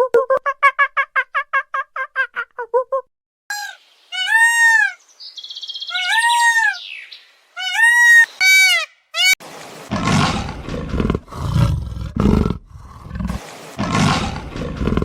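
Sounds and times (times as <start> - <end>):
animal calling: 3.5 - 9.4.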